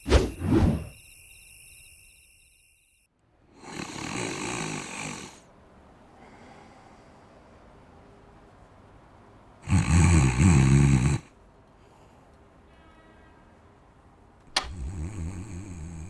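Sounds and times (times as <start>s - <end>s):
person snoring: 3.6s - 5.4s, 9.6s - 11.3s, 14.6s - 16.0s.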